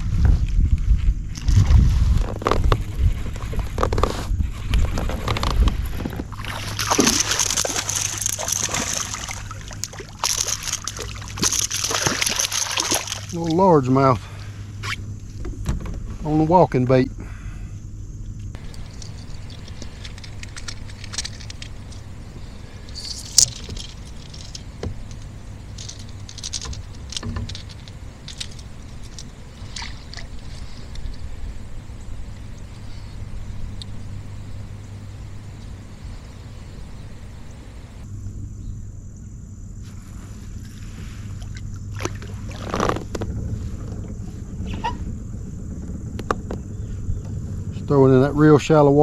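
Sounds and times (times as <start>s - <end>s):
steady low hum: 0.0s - 49.0s
water splashing and sloshing: 4.8s - 14.6s, 18.6s - 31.4s, 40.6s - 45.0s
light water splashes: 6.3s - 13.6s, 29.5s - 30.8s, 41.3s - 42.7s
small knocks and clicks: 22.9s - 31.2s.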